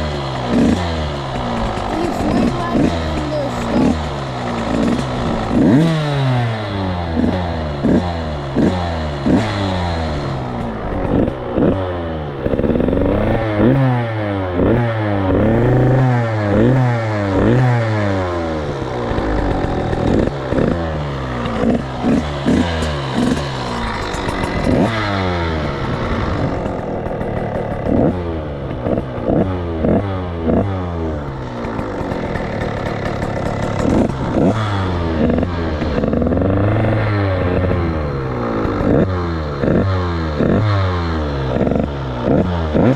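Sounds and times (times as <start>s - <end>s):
two-stroke engine revving: 0.0s - 42.9s.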